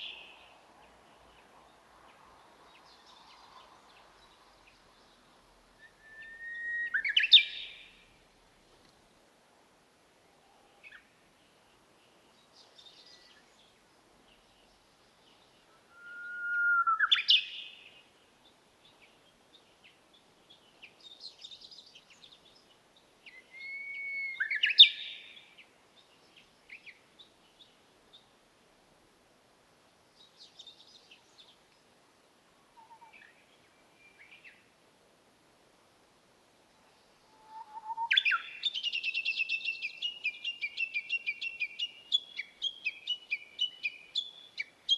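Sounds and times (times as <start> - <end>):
bird whistled song: 5.8 - 7.8, 15.9 - 17.8, 23.3 - 25.4, 37.5 - 44.9
faint bird chirps: 23.3 - 27.0, 32.7 - 34.7, 36.8 - 44.9.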